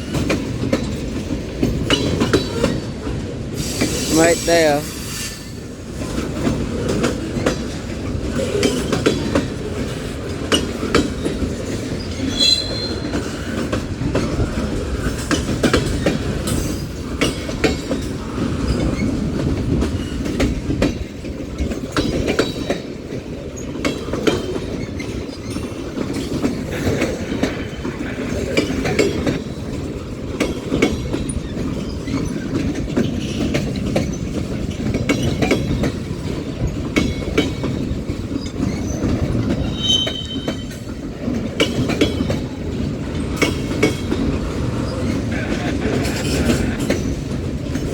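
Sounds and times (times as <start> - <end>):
train wheels rumbling on rail: 0.0 - 47.9
wheel squeal: 12.0 - 13.5, 38.6 - 40.9.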